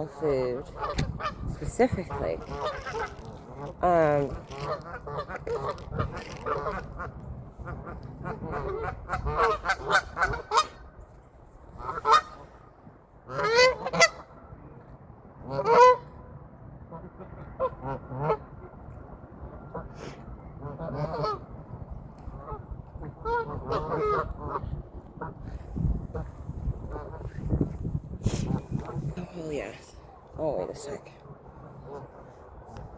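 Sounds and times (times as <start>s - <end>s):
geese honking: 0.1s - 10.8s, 13.3s - 14.3s, 22.4s - 24.6s.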